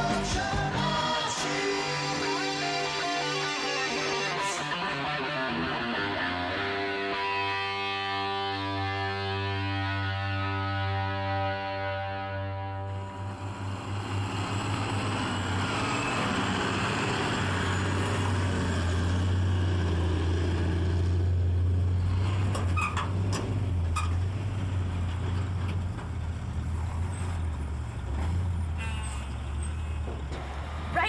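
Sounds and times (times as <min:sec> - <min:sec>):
heavy machinery engines rumbling: 0:00.0 - 0:07.4, 0:12.7 - 0:31.0
electric guitar music: 0:00.0 - 0:13.6.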